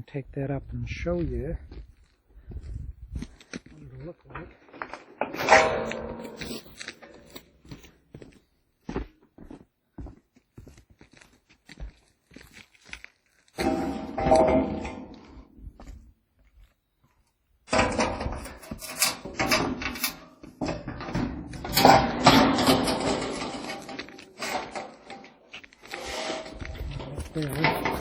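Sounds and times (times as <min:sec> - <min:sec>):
sheet-metal roofing clattering: 0:04.9 - 0:07.4, 0:13.6 - 0:15.4, 0:17.7 - 0:28.0.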